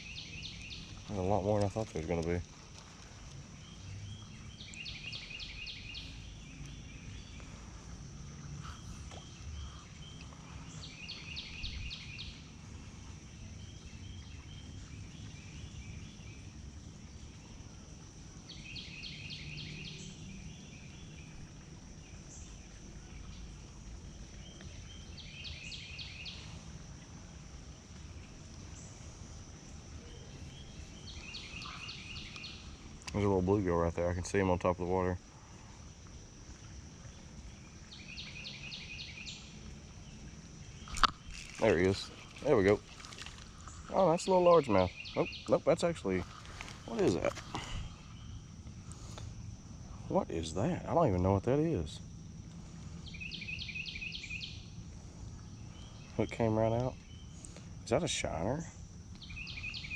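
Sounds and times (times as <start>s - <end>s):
songbird trilling: 0.0s - 2.4s, 3.6s - 7.5s, 8.6s - 12.5s, 24.4s - 26.6s, 30.0s - 34.5s, 37.5s - 49.2s, 52.9s - 59.9s
low background noise: 0.0s - 59.9s.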